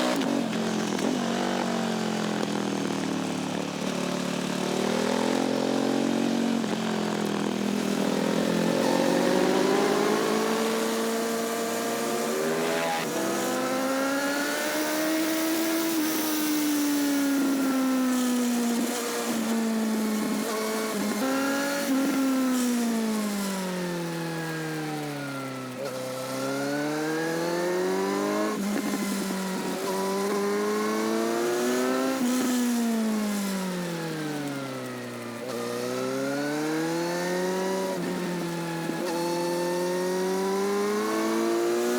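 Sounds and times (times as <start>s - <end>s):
motorcycle engine revving: 0.0s - 17.5s.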